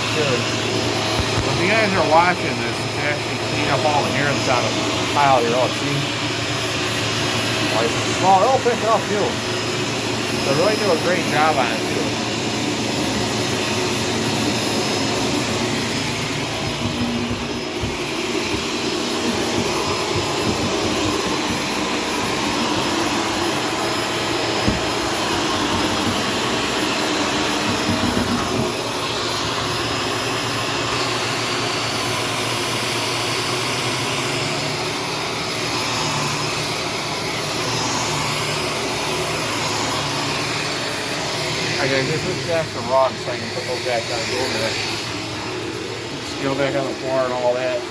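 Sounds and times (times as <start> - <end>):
vacuum cleaner running: 0.0 - 47.9.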